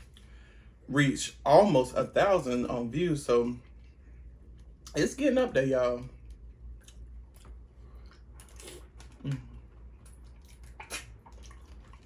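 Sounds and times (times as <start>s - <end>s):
person chewing and lip smacking: 6.2s - 12.0s.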